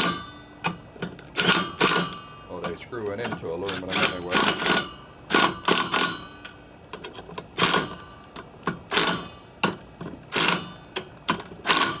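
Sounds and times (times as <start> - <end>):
ratchet wrench clicking: 1.4 - 2.3, 8.9 - 9.4, 10.3 - 12.0.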